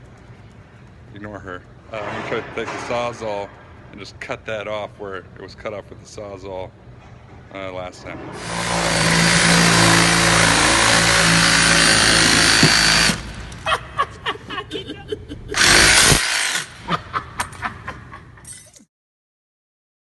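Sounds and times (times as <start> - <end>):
reciprocating saw cutting: 8.4 - 13.7, 15.6 - 16.9
sharp knocks: 12.4 - 13.2.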